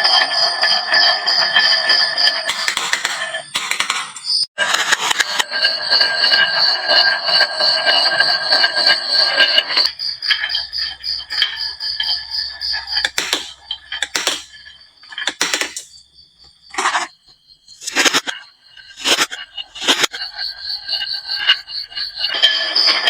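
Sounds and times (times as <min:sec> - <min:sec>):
marbles clacking: 0:02.3 - 0:04.5, 0:12.5 - 0:16.0
marbles rolling down wooden run: 0:02.4 - 0:04.2, 0:12.4 - 0:14.6, 0:15.2 - 0:15.9.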